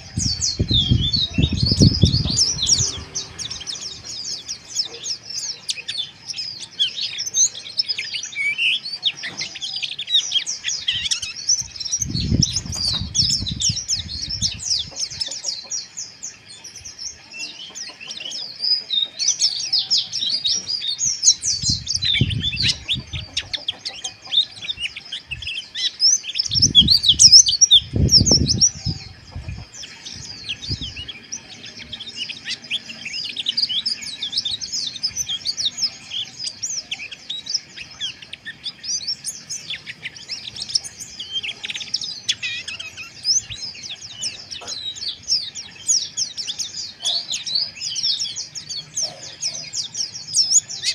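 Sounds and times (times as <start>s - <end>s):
low rumbling noise: 0.0s - 4.6s
birds twittering: 0.0s - 50.9s.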